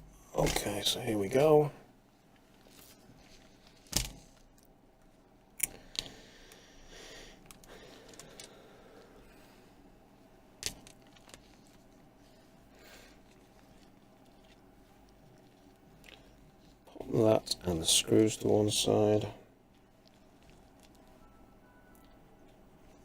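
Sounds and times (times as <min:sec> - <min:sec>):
small parts clicking: 0:07.4 - 0:08.6.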